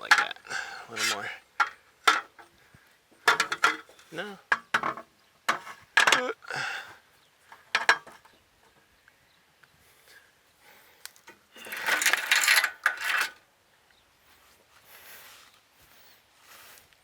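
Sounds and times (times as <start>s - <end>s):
drive chain rattling: 11.6s - 13.4s.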